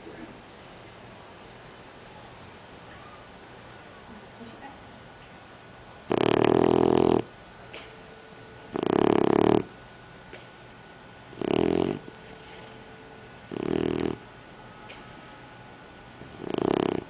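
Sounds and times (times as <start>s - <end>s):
pet snoring: 6.0s - 7.3s, 8.6s - 9.8s, 11.2s - 14.3s, 15.9s - 17.0s.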